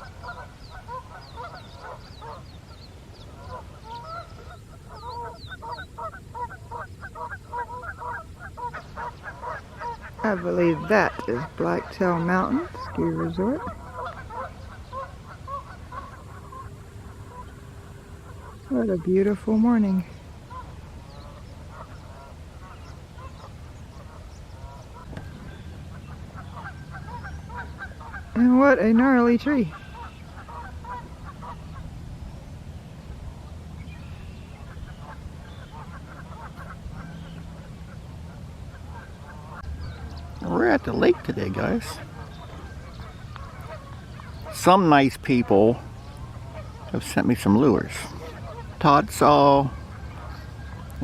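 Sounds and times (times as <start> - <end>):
geese honking: 0.0 - 32.0, 33.0 - 51.0.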